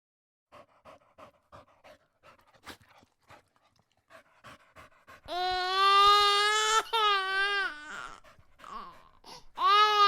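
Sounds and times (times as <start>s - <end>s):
dog panting: 0.5s - 5.8s, 7.7s - 9.6s.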